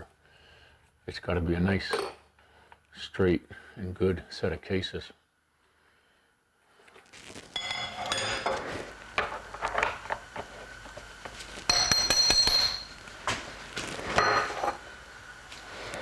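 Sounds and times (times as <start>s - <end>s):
ringing metal clank: 11.7s - 12.9s.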